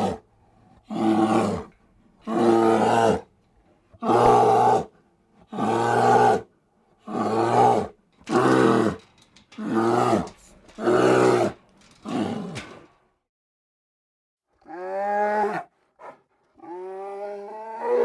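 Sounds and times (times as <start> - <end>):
bear roaring: 0.9 - 3.3, 4.0 - 4.9, 5.5 - 12.7, 14.6 - 18.0.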